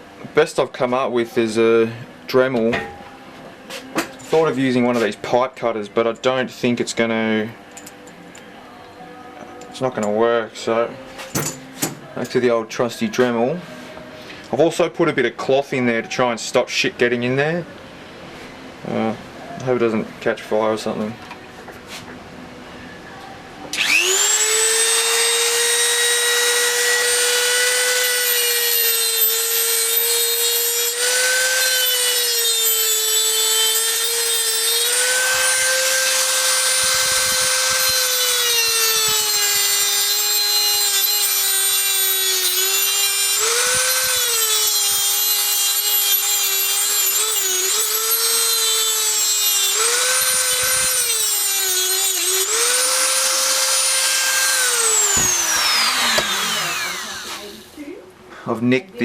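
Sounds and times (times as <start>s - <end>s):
rotary tool cutting metal: 23.8s - 57.8s.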